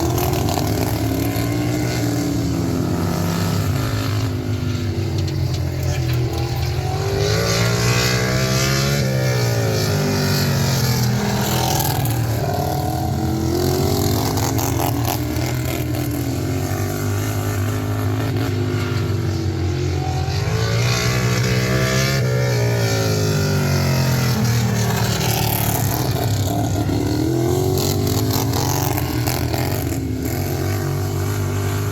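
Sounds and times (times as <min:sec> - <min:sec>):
lawn tractor engine revving: 0:22.8 - 0:31.9.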